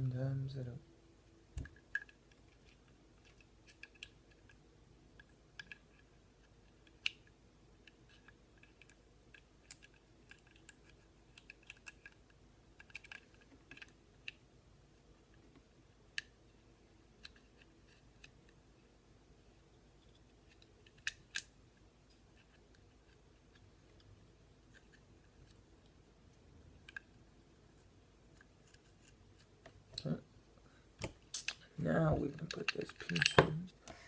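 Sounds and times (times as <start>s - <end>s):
small metal parts clicking: 32.4s - 33.6s.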